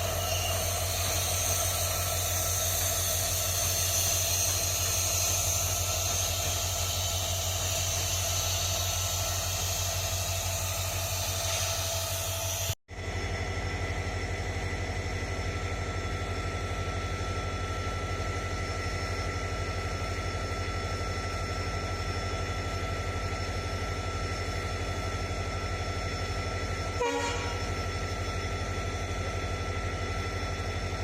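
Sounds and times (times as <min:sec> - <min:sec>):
high steady whine: 0:00.0 - 0:31.0
train locomotive rumbling: 0:00.0 - 0:31.0.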